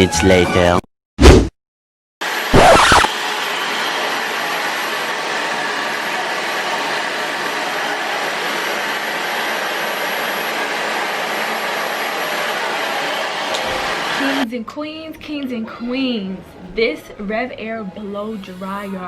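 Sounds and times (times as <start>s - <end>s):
hair dryer fan running: 3.1s - 14.4s.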